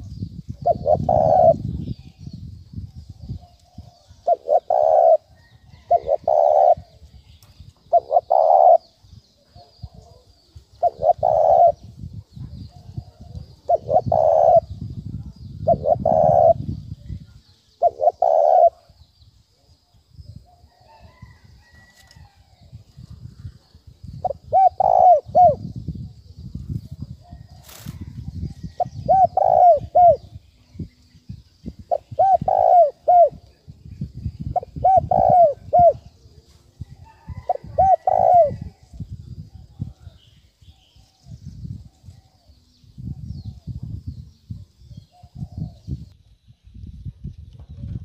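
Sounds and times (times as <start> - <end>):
dove cooing: 0.6 - 2.2, 3.3 - 7.0, 7.9 - 14.8, 15.6 - 16.8, 17.8 - 19.0, 24.2 - 25.8, 27.2 - 30.3, 31.8 - 33.4, 34.5 - 36.1, 37.2 - 38.9.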